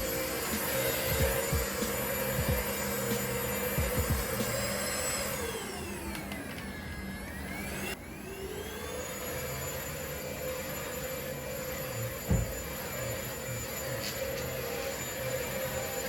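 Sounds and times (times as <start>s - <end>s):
handheld vacuum running: 0.0s - 16.0s
soft low thumps: 3.8s - 4.4s.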